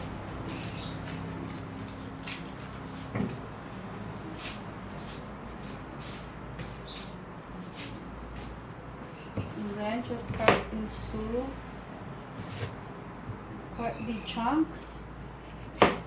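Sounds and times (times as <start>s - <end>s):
onion skins crackling and tearing: 0.1s - 3.1s.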